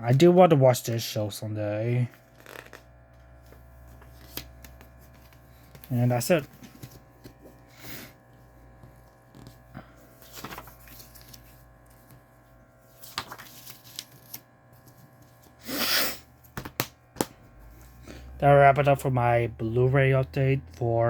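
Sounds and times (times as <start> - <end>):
paper rustling: 2.1 - 15.6.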